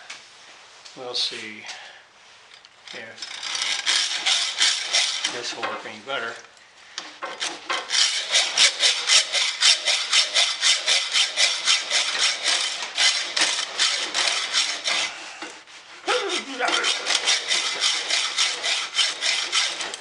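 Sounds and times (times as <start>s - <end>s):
hacksaw cutting metal: 2.9s - 5.8s, 7.2s - 15.2s, 16.1s - 20.0s.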